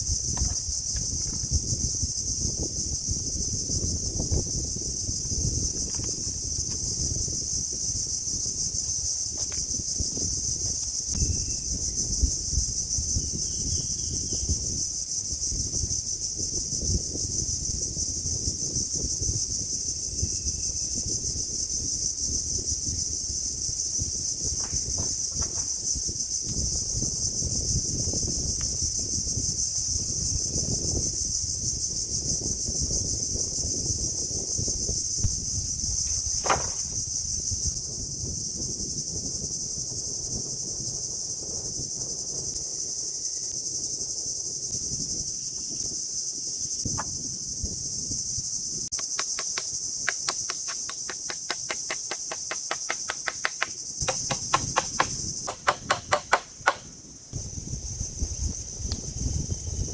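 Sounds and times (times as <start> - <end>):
insects chirring: 0.0 - 59.9
fast sharp taps: 49.0 - 56.9.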